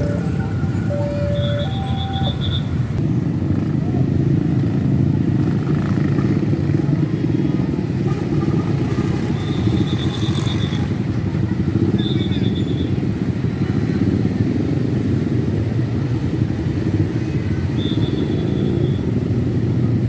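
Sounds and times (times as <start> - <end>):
high pulsing whistle-like trill: 0.0 - 2.7
diesel truck engines rumbling: 0.0 - 20.0.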